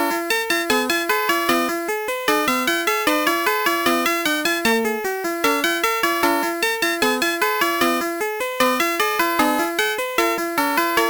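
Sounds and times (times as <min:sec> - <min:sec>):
toy electronic bell-like melody: 0:00.0 - 0:08.1.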